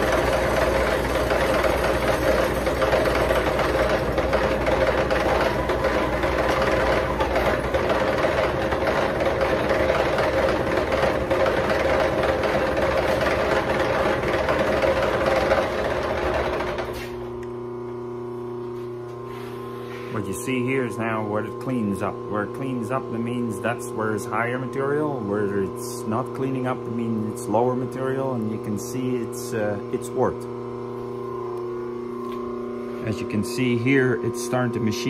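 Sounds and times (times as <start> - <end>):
milling machine cutting metal: 0.0 - 17.0.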